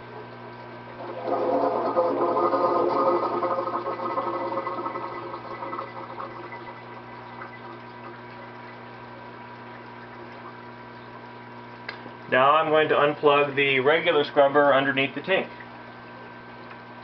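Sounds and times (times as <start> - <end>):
pumps humming: 0.0 - 17.0
water splashing and trickling: 3.2 - 13.4.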